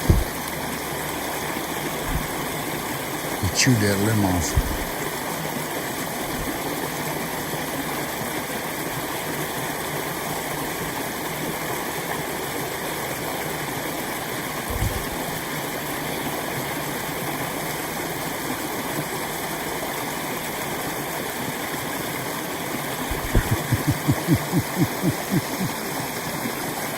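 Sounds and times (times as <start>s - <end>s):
low thump: 0.0s - 0.4s, 23.1s - 24.4s
low thuds: 0.0s - 0.5s, 23.1s - 25.6s.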